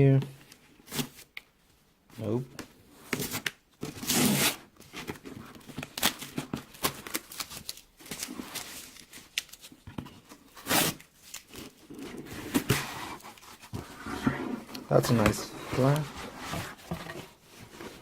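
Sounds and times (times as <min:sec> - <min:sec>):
cardboard ripping: 0:03.9 - 0:04.6, 0:10.6 - 0:13.4
cardboard box rustling and scraping: 0:11.9 - 0:18.0.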